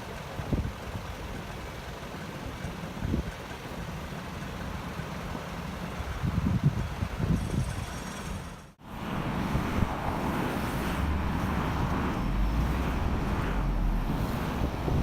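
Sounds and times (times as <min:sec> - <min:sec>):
steady outdoor noise: 0:00.0 - 0:15.0
wind buffeting microphone: 0:06.1 - 0:07.9, 0:08.8 - 0:15.0
low rumble: 0:08.8 - 0:15.0.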